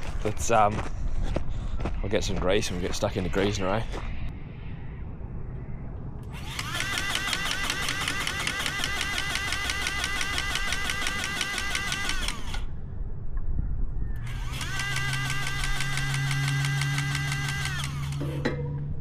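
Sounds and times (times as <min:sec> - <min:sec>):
powered grease gun motor whine: 0:06.3 - 0:12.7, 0:14.3 - 0:18.4.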